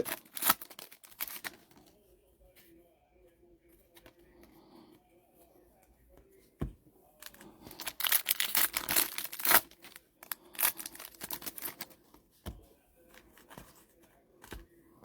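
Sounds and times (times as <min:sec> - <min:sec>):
plastic wrapping tearing and crinkling: 0:00.0 - 0:01.6, 0:07.2 - 0:12.0.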